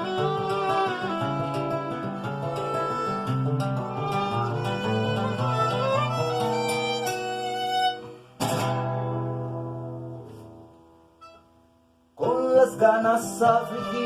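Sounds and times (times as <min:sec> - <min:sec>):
violin melody: 0:00.0 - 0:08.4, 0:11.2 - 0:11.5, 0:13.5 - 0:14.0
acoustic guitar picking: 0:00.0 - 0:14.0.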